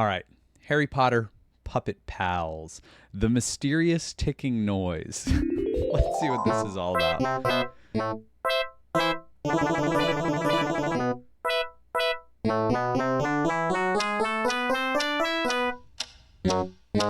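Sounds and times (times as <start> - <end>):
piano-like keyboard music: 5.3 - 7.7.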